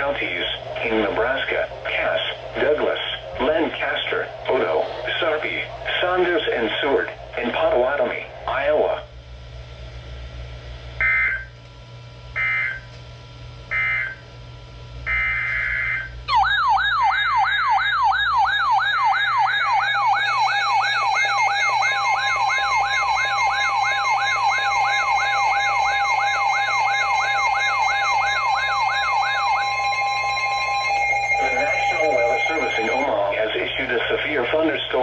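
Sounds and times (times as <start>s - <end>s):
warbling siren-like alert tone: 11.0s - 11.5s, 12.4s - 12.9s, 13.7s - 14.2s, 15.1s - 33.4s
buzzy digital data bursts: 18.9s - 34.7s.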